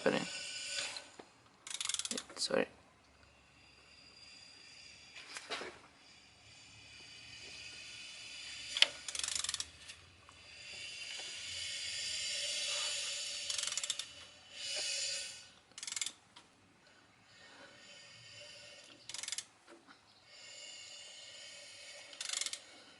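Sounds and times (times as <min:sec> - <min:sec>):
ratchet wrench clicking: 0:01.6 - 0:02.3, 0:07.7 - 0:10.0, 0:12.9 - 0:14.2, 0:15.8 - 0:16.2, 0:19.1 - 0:19.5, 0:22.1 - 0:22.7.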